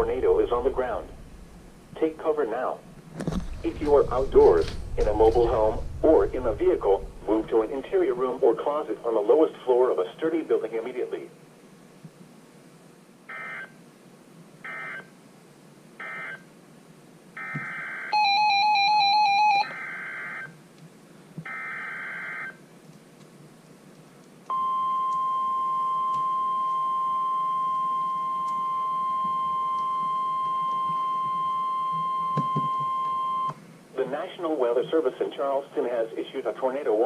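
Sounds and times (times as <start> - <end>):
steady high alarm tone: 17.4 - 20.5, 24.5 - 33.6
loud warbling beep: 24.6 - 33.5.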